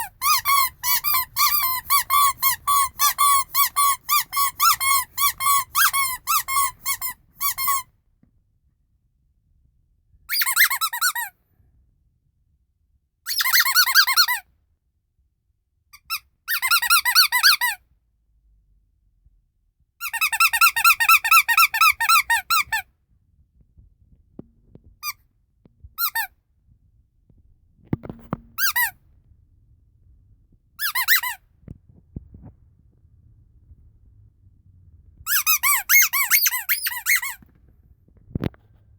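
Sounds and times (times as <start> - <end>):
rubber squeaky toys squeaking: 0.0 - 7.9, 10.3 - 11.4, 13.3 - 14.4, 16.0 - 17.8, 20.0 - 22.9, 25.0 - 25.2, 26.0 - 26.3, 28.1 - 29.0, 30.8 - 31.4, 35.2 - 37.5
faint handling noise: 26.8 - 29.4.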